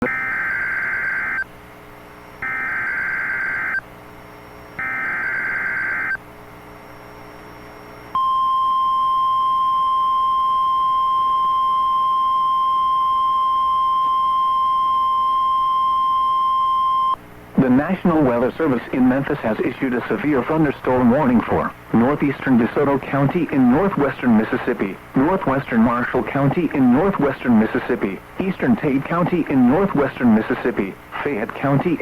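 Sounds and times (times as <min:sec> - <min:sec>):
steady alarm tone: 0:00.0 - 0:01.5, 0:02.4 - 0:03.8, 0:04.6 - 0:06.2.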